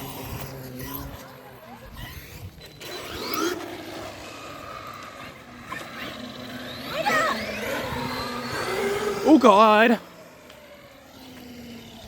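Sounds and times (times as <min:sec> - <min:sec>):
electric rc car motor whining: 0:00.0 - 0:12.0.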